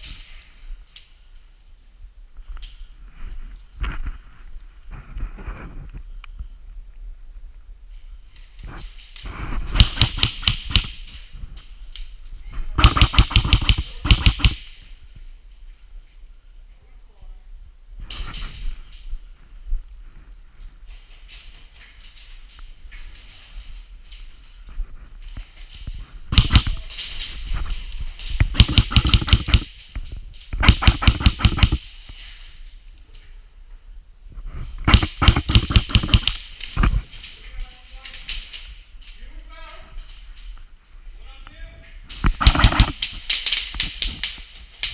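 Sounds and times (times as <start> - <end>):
airsoft guns firing: 9.6 - 11.2, 12.8 - 14.8, 26.3 - 27.4, 28.4 - 29.8, 30.6 - 31.9, 34.8 - 36.6, 42.2 - 44.4.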